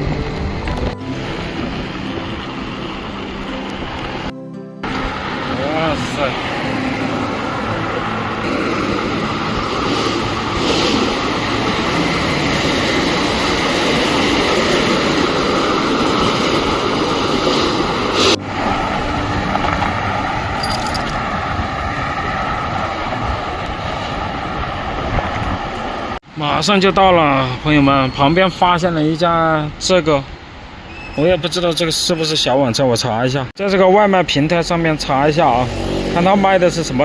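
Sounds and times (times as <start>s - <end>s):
wind rush: 0.0s - 28.6s
road noise: 0.0s - 37.0s.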